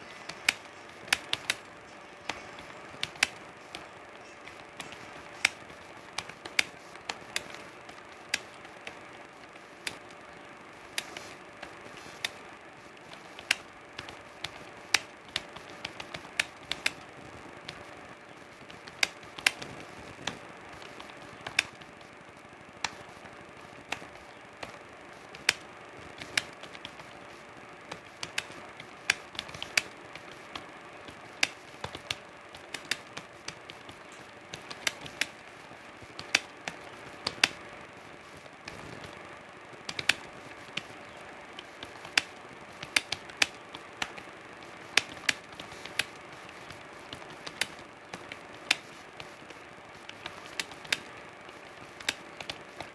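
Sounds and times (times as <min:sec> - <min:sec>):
faint steady hum: 0:00.0 - 0:52.9
keyboard key clicks: 0:02.2 - 0:03.8, 0:18.6 - 0:22.0, 0:22.8 - 0:23.1, 0:23.9 - 0:27.2, 0:27.9 - 0:35.4, 0:36.2 - 0:37.6, 0:39.9 - 0:44.2.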